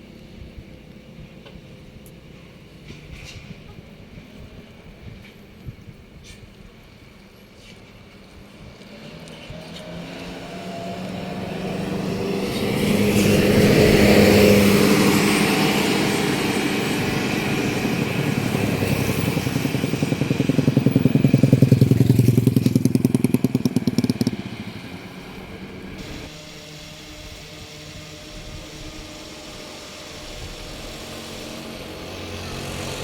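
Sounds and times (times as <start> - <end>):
vehicle engine passing: 8.5 - 33.0
engine with fast pulsing beat: 10.4 - 33.0.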